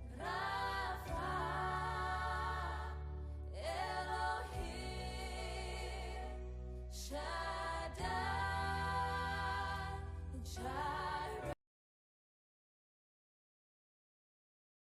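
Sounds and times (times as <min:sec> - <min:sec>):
song with singing: 0:00.0 - 0:11.6.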